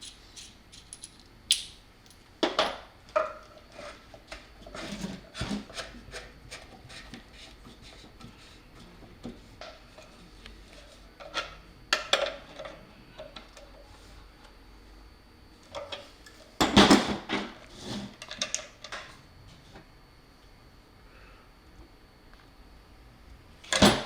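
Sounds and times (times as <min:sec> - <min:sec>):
metal tools clinking on work surface: 0:00.0 - 0:02.7.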